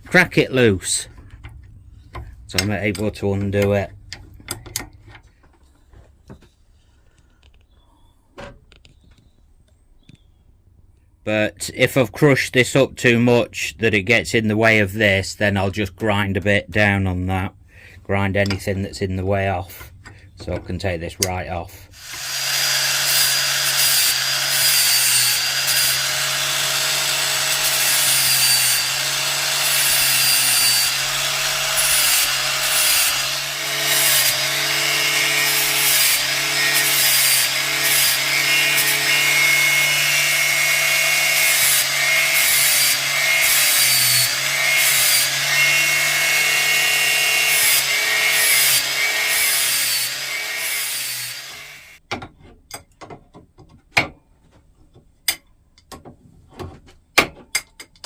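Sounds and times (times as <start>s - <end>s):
angle grinder grinding metal: 21.9s - 52.0s.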